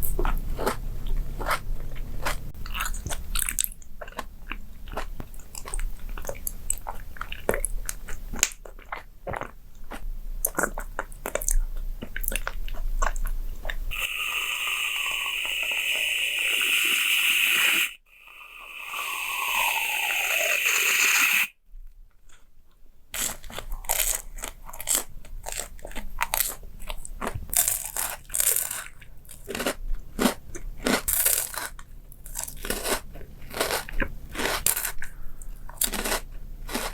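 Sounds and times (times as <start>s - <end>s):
crunching and chewing: 0.0s - 14.2s, 22.1s - 36.9s
hiss with falling tones: 13.9s - 21.5s.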